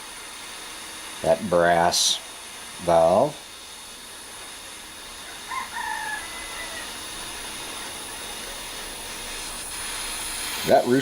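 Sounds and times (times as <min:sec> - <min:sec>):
torch flame hissing: 0:00.0 - 0:11.0
rooster crowing: 0:05.2 - 0:07.2.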